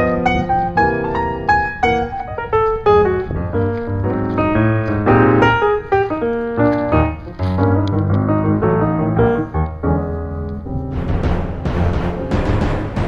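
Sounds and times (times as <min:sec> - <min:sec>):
piano music with bass line: 0:00.0 - 0:13.0.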